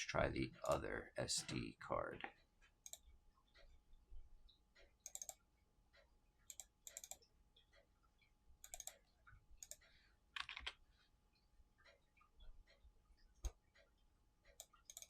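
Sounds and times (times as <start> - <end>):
mouse and keyboard clicks: 2.8 - 3.7, 4.5 - 7.8, 8.6 - 10.8, 13.4 - 15.0.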